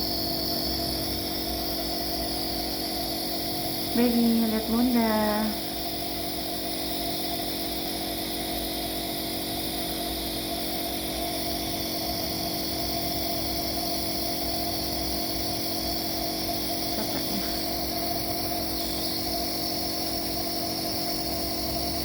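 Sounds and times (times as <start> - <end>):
nebulizer compressor humming: 0.0 - 22.0.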